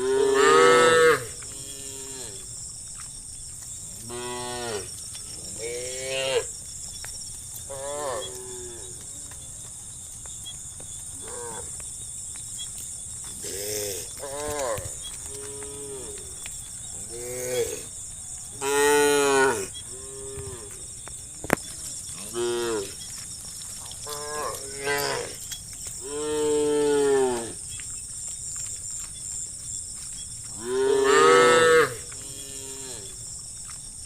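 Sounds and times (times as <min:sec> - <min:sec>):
cows mooing: 0:00.0 - 0:02.4, 0:18.6 - 0:20.8, 0:22.2 - 0:23.0, 0:24.0 - 0:25.4, 0:26.0 - 0:27.6, 0:30.5 - 0:33.2.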